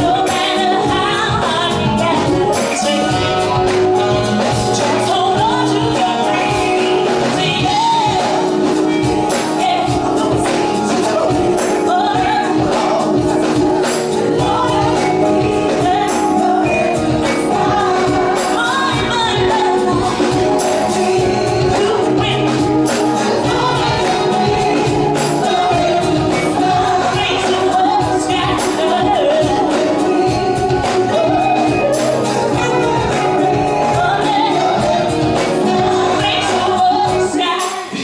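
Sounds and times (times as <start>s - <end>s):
band playing a steady beat: 0.0s - 38.0s
gospel choir singing: 0.0s - 38.0s.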